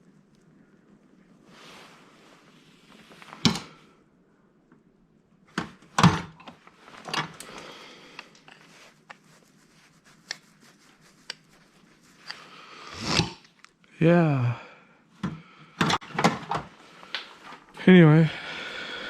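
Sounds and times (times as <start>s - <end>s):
rustling and scraping: 1.4s - 3.9s, 5.5s - 13.7s.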